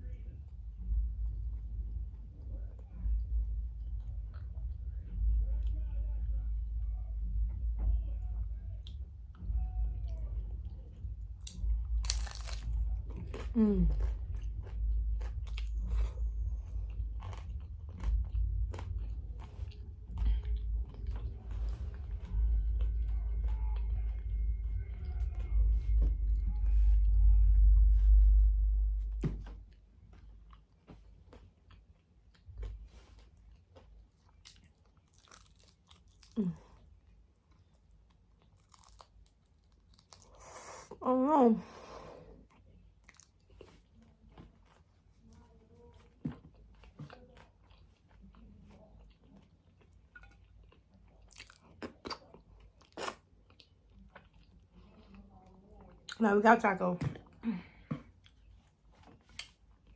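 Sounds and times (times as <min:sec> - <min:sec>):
low rumble: 0:00.0 - 0:31.1
person chewing crunchy food: 0:11.4 - 0:28.2, 0:29.2 - 0:40.9, 0:42.2 - 0:55.4, 0:58.0 - 0:59.9.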